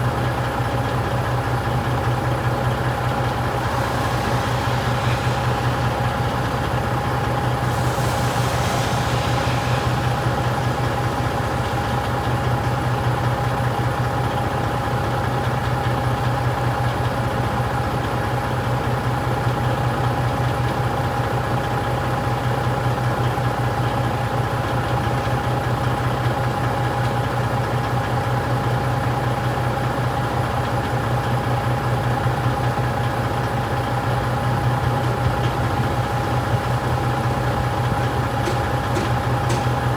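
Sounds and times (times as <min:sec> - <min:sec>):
truck engine idling: 0:00.0 - 0:17.2, 0:20.9 - 0:39.9
brief hiss: 0:02.6 - 0:14.0, 0:35.2 - 0:39.9
high-pitched hum: 0:02.7 - 0:13.8.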